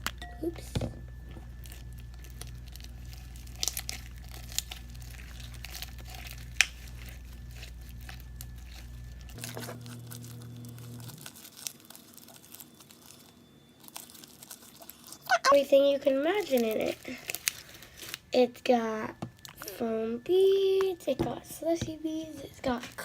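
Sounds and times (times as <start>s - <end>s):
steady low hum: 0.0s - 12.0s, 12.7s - 23.0s
slime crackling and clicking: 1.6s - 10.0s.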